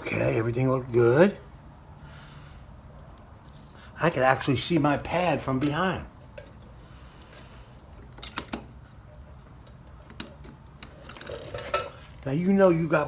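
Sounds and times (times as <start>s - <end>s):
low steady hum: 0.0s - 13.0s
hand tools clicking and tapping: 5.6s - 8.7s, 9.6s - 12.0s.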